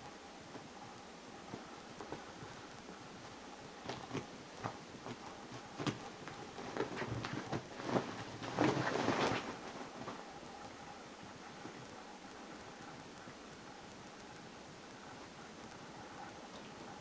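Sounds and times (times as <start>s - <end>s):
paws scrabbling and thudding: 1.4s - 10.6s
cats fighting: 1.4s - 13.2s.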